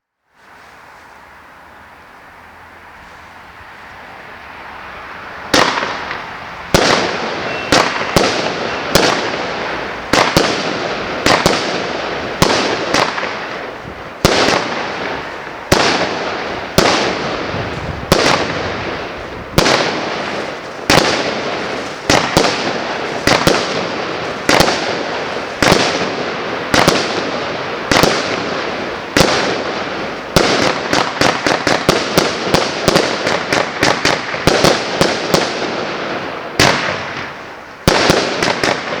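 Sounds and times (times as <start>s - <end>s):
fireworks hissing: 0.3s - 39.0s
fireworks shots: 5.4s - 39.0s.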